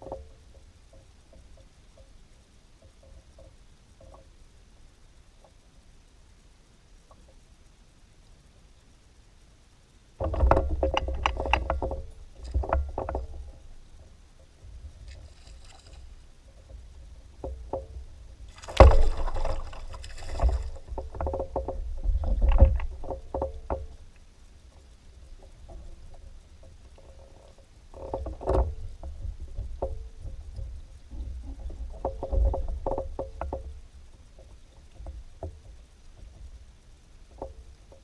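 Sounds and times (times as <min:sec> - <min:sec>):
deep bumping handling noise: 0:16.0 - 0:24.0
knocks on kayak hull: 0:18.6 - 0:20.7.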